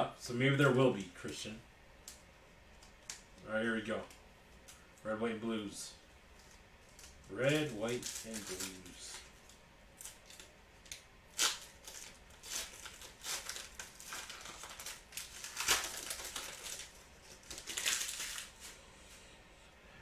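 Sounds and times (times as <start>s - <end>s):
foil wrapper tearing and crinkling: 6.4s - 18.8s.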